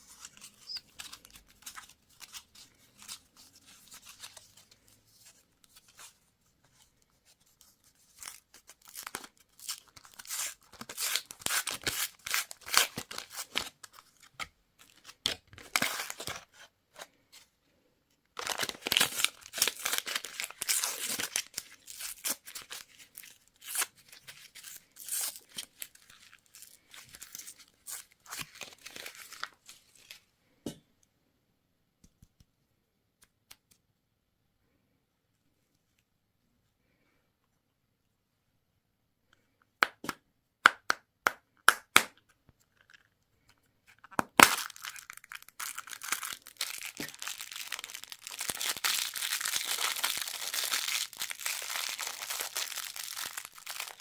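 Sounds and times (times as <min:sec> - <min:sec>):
packaging tearing and crinkling: 0:18.4 - 0:29.5, 0:44.2 - 0:54.0.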